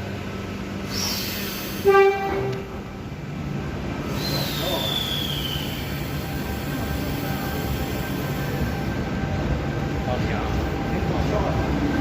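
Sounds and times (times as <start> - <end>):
train rumbling: 0.0 - 12.0
train horn blast: 1.8 - 2.9.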